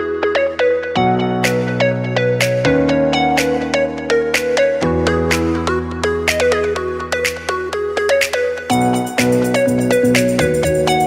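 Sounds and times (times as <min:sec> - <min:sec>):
plucked electronic notes: 0:00.0 - 0:11.0
held bass: 0:08.7 - 0:11.0.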